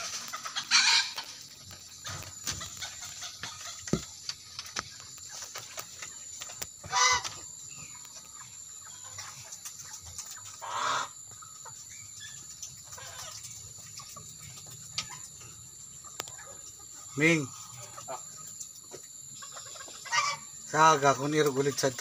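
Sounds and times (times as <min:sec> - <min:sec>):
loud chicken calls: 0:00.0 - 0:04.2, 0:06.5 - 0:11.8, 0:16.0 - 0:22.0
chickens clucking: 0:00.0 - 0:22.0.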